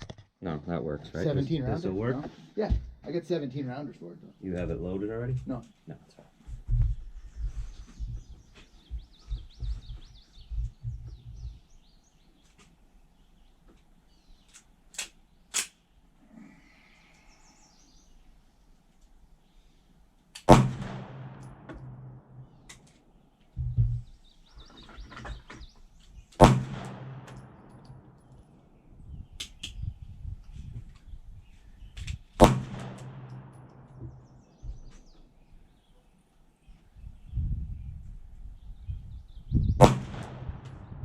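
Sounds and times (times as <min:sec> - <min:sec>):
sharp clicks: 0:14.4 - 0:15.8
pistol shots with echo: 0:20.4 - 0:22.6, 0:26.4 - 0:28.2, 0:32.4 - 0:34.0, 0:39.8 - 0:41.0.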